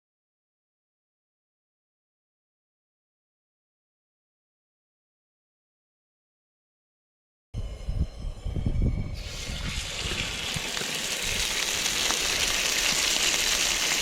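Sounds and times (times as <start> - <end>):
meat sizzling in a hot pan: 9.2 - 14.0.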